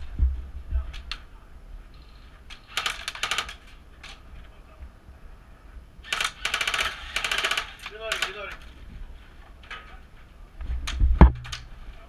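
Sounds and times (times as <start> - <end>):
airsoft rifle firing bursts: 2.6 - 3.6, 6.0 - 8.5.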